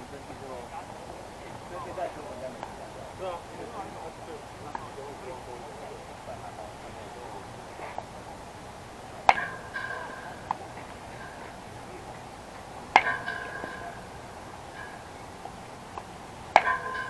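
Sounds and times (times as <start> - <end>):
metallic bat pings: 9.3 - 12.1, 12.9 - 15.3, 15.9 - 17.0.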